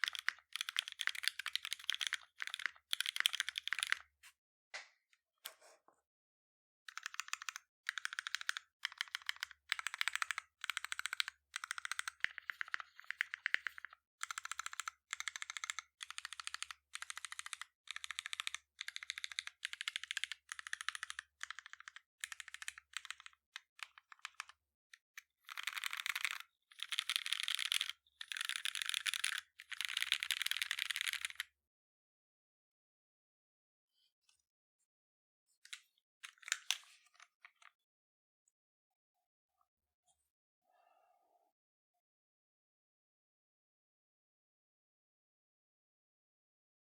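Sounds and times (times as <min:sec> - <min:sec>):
typing on mechanical keyboard: 0:00.0 - 0:04.1, 0:06.9 - 0:24.6, 0:25.4 - 0:31.5.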